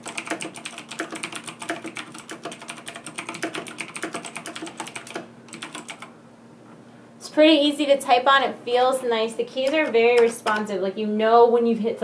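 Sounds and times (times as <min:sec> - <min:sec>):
fast typing on mechanical keyboard: 0:00.0 - 0:06.1, 0:09.6 - 0:10.7.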